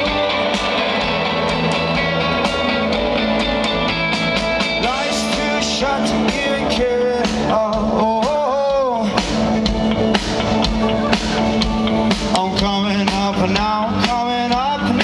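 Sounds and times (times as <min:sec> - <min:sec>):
bass guitar: 0:00.0 - 0:15.0
drums: 0:00.0 - 0:15.0
electric guitars: 0:00.0 - 0:15.0
person singing: 0:04.8 - 0:09.7, 0:10.7 - 0:15.0.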